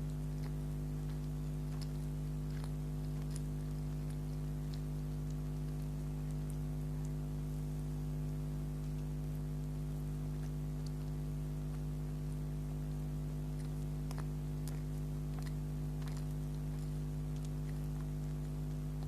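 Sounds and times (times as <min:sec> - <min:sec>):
person chewing soft food: 0:00.0 - 0:19.0
steady electrical hum: 0:00.0 - 0:19.0.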